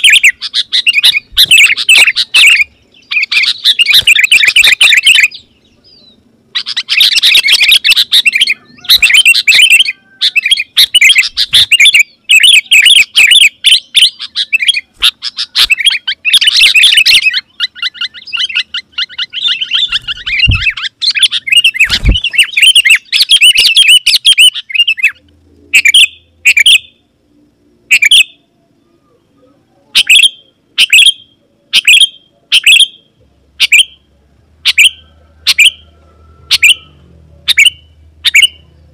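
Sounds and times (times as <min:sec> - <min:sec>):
bird singing and chattering: 0:00.0 - 0:27.1, 0:27.8 - 0:35.9, 0:36.5 - 0:38.9
low thumps: 0:20.0 - 0:20.8.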